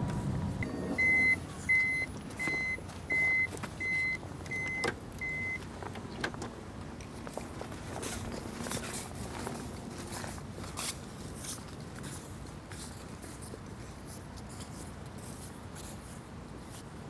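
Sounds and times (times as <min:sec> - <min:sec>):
short high beeps: 0:00.6 - 0:05.6.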